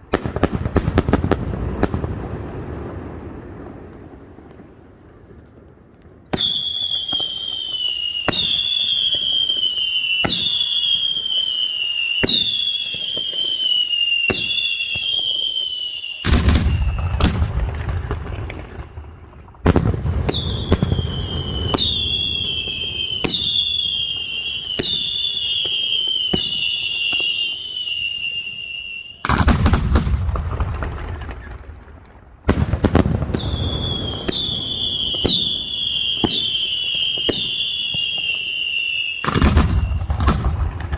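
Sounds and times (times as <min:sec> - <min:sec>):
whistling fireworks: 0:00.0 - 0:40.9.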